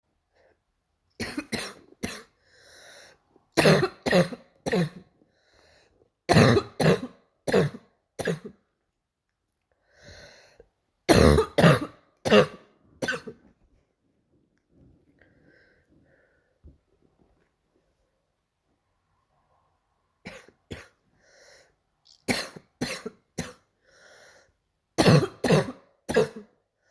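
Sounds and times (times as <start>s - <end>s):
girl barking cough: 1.2s - 2.3s, 3.6s - 5.0s, 6.3s - 8.6s, 11.1s - 13.4s, 22.3s - 23.6s, 25.0s - 26.5s.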